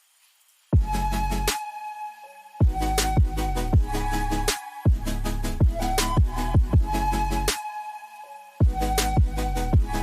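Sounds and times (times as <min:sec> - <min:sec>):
electronic beat music: 0:02.6 - 0:07.9, 0:08.6 - 0:10.0.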